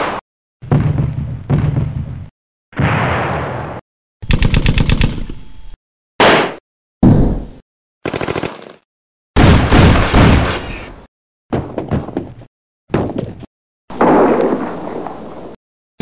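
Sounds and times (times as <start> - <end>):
machine-gun burst: 4.2 - 5.8, 8.0 - 8.8
gun shots: 4.2 - 6.6.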